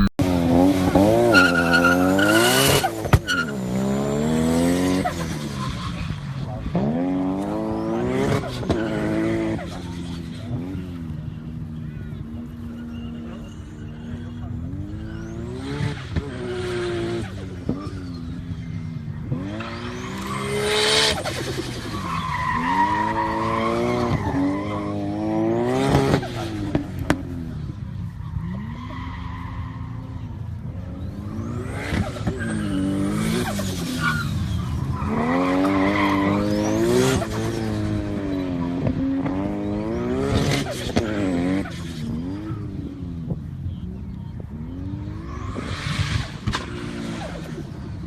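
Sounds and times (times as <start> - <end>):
turbocharged car engine revving: 0.0 - 11.1.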